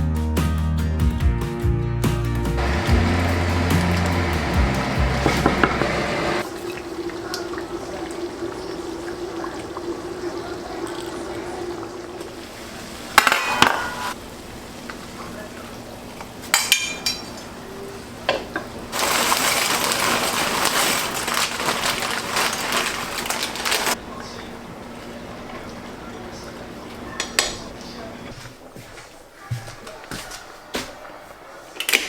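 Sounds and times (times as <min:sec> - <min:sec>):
water running: 0:02.6 - 0:31.9
dishes clinking and knocking: 0:05.1 - 0:06.4, 0:13.2 - 0:14.2, 0:16.5 - 0:17.4.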